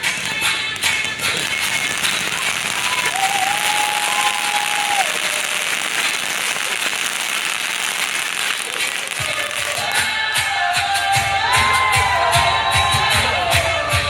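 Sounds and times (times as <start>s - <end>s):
crowd applauding: 0.0s - 10.3s
long held cheer or whistle: 2.6s - 7.6s, 11.0s - 14.0s.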